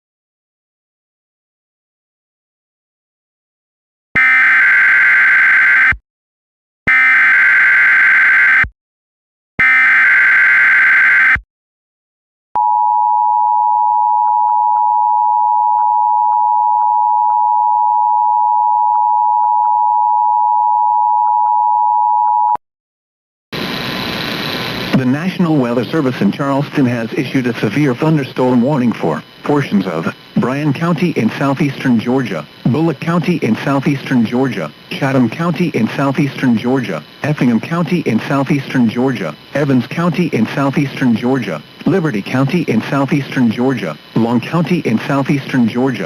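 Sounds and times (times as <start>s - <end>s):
digital data bursts: 23.6s - 46.0s.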